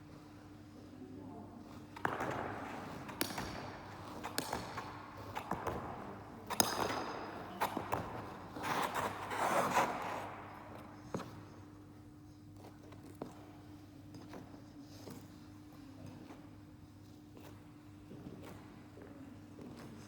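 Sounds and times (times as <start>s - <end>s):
skate blades scraping ice: 2.0s - 11.4s.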